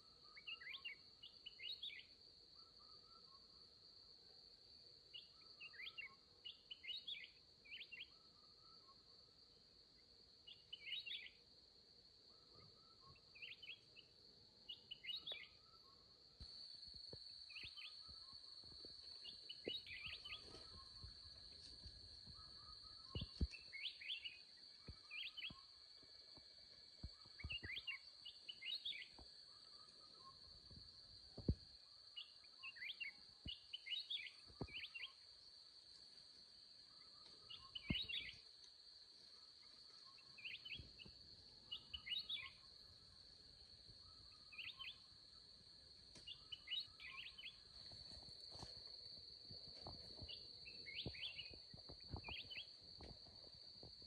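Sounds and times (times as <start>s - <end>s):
insect drone: 0.0s - 54.0s
bird chirping: 0.3s - 2.2s, 5.1s - 8.2s, 10.5s - 11.4s, 12.5s - 16.0s, 16.6s - 30.8s, 32.2s - 35.2s, 37.0s - 38.6s, 39.6s - 42.8s, 44.0s - 45.1s, 46.1s - 48.0s, 49.8s - 53.1s.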